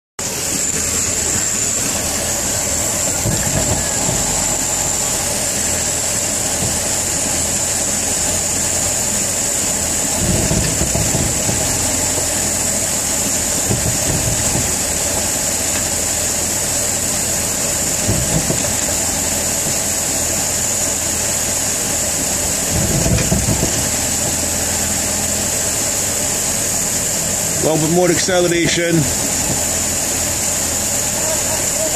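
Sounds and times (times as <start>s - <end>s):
car engine running: 0.2s - 31.9s
low driveline clunks: 0.6s - 8.7s, 10.0s - 16.2s, 17.9s - 21.0s, 22.7s - 25.2s.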